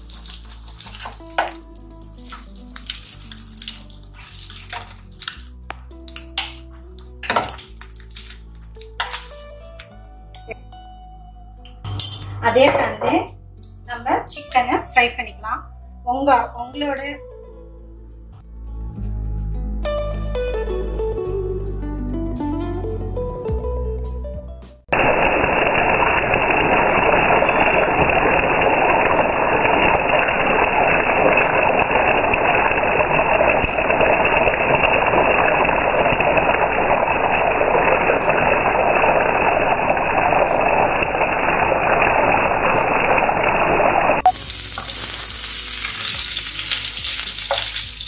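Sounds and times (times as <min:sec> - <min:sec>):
chicken sizzling in a frying pan: 0:00.0 - 0:05.0, 0:25.0 - 0:48.0.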